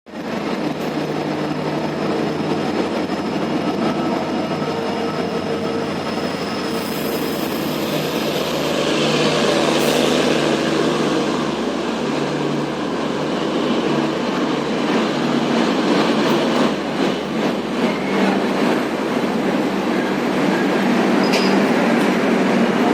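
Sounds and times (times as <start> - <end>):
train coaches rumbling: 0.1 - 22.9
high squeal: 4.1 - 10.4.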